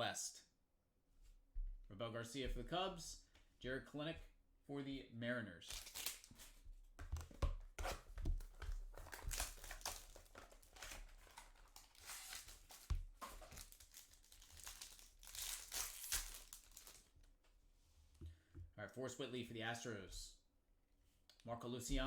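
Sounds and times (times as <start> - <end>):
foil wrappers crinkling and tearing: 5.7 - 6.6, 8.4 - 17.2
cards being handled: 5.7 - 17.1.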